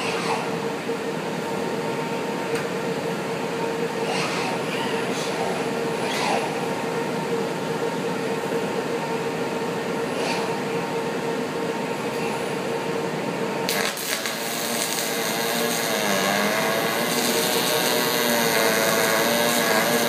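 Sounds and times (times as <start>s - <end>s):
constant hum: 0.0s - 20.0s
arc welding crackling hiss: 13.7s - 20.0s.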